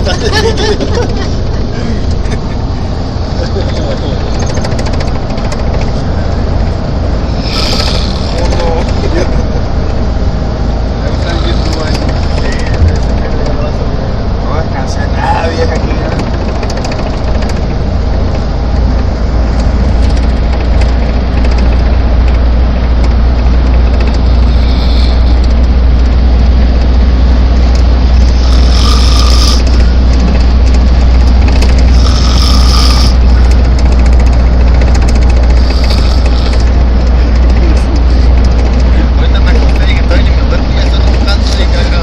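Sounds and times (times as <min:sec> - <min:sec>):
deep vehicle rumble: 0:00.0 - 0:42.0
person snoring: 0:07.3 - 0:08.6, 0:11.2 - 0:12.4, 0:24.2 - 0:25.5, 0:28.2 - 0:29.8, 0:31.9 - 0:33.2, 0:35.6 - 0:36.7.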